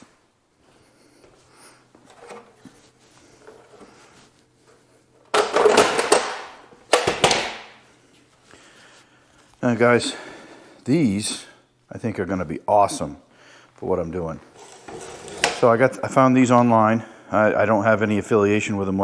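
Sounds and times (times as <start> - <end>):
faint shuffling: 0.0 - 5.2.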